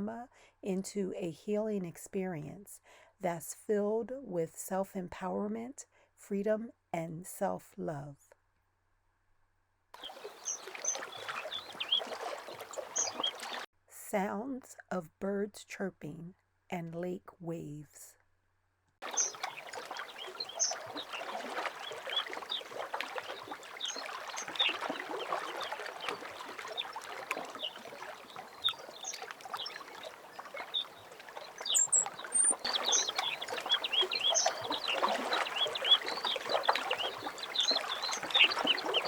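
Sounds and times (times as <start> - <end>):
birds chirping: 10.0 - 13.7, 19.0 - 39.0
lake waves lapping: 10.0 - 13.7, 19.0 - 39.0.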